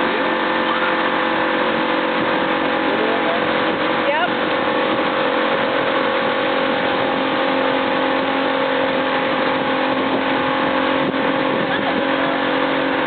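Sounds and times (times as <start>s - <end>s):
boat engine droning: 0.0s - 13.0s
water noise: 0.0s - 13.0s
wind noise: 0.0s - 13.0s.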